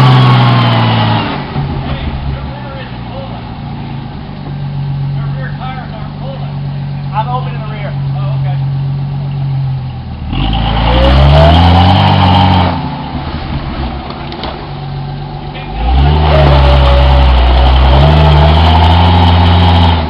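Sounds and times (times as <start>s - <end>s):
car engine revving hard: 0.0s - 5.4s, 9.6s - 14.0s, 14.7s - 20.0s.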